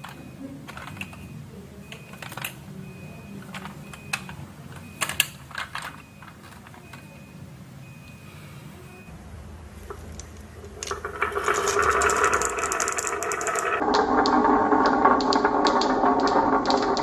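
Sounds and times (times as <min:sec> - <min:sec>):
marbles clicking and clacking: 0:09.9 - 0:17.0
marbles rolling on track: 0:09.9 - 0:17.0.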